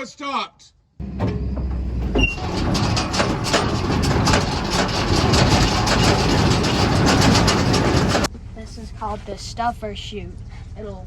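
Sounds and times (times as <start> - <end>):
baler mechanism clattering: 1.0 - 8.3
tractor engine humming: 1.0 - 11.0.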